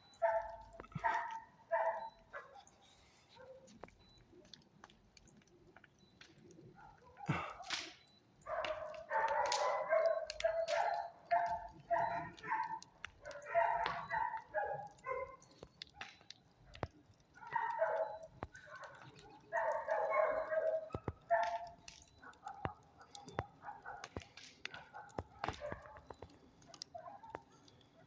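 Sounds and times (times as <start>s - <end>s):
dog barking and yelping: 0.2s - 3.7s, 8.5s - 16.1s, 16.7s - 27.5s.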